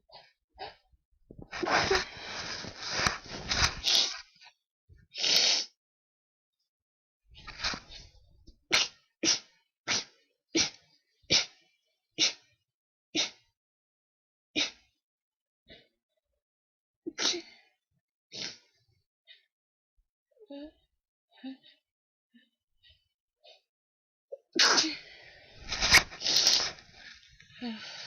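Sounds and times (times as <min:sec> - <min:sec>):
person sneezing: 0:17.1 - 0:17.6, 0:24.6 - 0:25.0.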